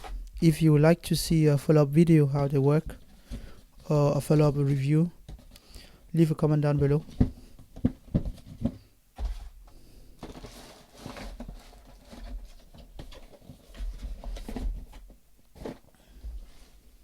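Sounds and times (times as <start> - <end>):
dull thuds: 6.7 - 9.6
packaging rustling: 10.2 - 15.9.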